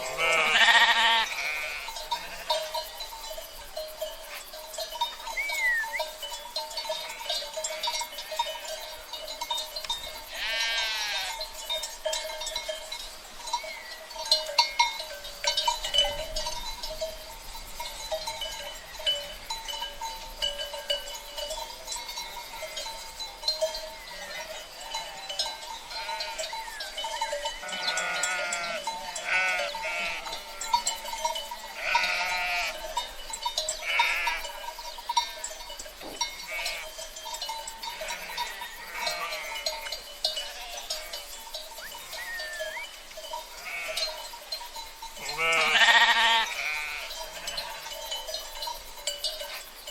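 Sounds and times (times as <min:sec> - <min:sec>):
sheep bleating: 0:00.0 - 0:02.6, 0:10.3 - 0:11.4, 0:27.6 - 0:30.8, 0:31.8 - 0:32.8, 0:33.8 - 0:34.4, 0:36.4 - 0:36.9, 0:37.9 - 0:39.8, 0:41.9 - 0:42.8, 0:43.6 - 0:44.1, 0:45.2 - 0:47.9
bells jangling: 0:00.0 - 0:49.9.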